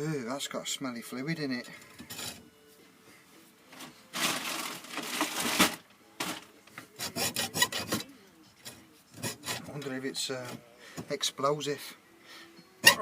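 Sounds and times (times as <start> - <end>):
rough rustling scrape: 3.8 - 7.9.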